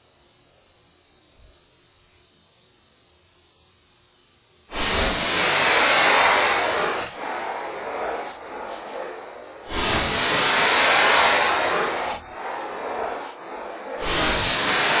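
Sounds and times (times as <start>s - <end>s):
crickets trilling: 0.0s - 15.0s
loud rushing noise: 4.7s - 15.0s.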